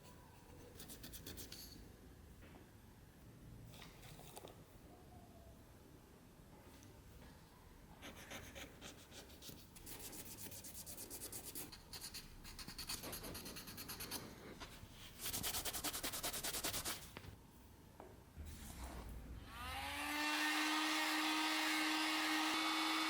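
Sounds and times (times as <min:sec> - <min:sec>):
hand scrubbing hard surface: 0:09.8 - 0:17.1.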